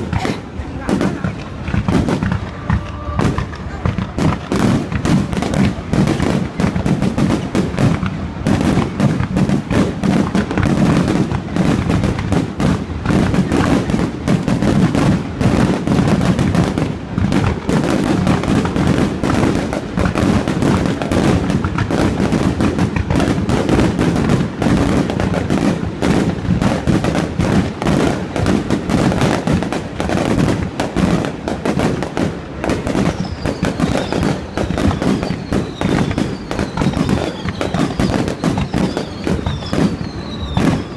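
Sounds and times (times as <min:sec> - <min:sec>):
fireworks bangs and crackling: 0:00.0 - 0:40.9
firework whistles falling in pitch: 0:33.0 - 0:40.9.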